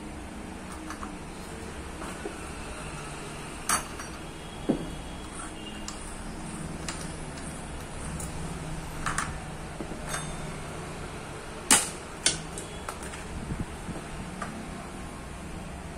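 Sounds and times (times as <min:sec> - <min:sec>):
tools clicking and knocking: 0:00.7 - 0:01.2, 0:03.7 - 0:10.6, 0:11.7 - 0:13.3.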